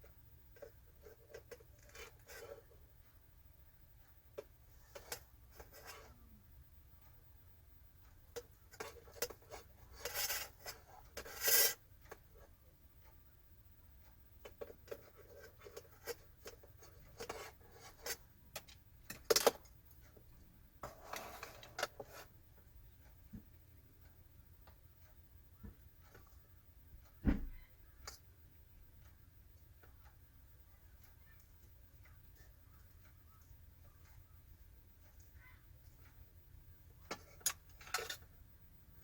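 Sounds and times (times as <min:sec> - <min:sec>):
utensils and dishes clicking: 0:37.1 - 0:38.3.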